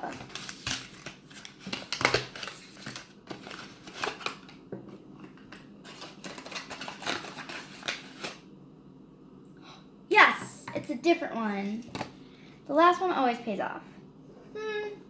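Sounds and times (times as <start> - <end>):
plastic packaging rustling: 0.0 - 4.6, 5.2 - 8.4
plastic wrappers clicking and crackling: 0.0 - 4.6, 5.4 - 8.4.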